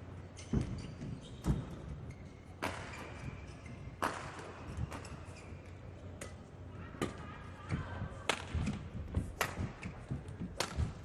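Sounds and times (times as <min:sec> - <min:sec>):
shoe squeaks on court floor: 0:00.3 - 0:04.0.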